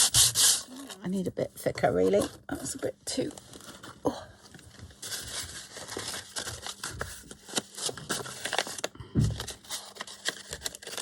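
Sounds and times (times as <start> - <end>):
paper crinkling: 3.3 - 11.0.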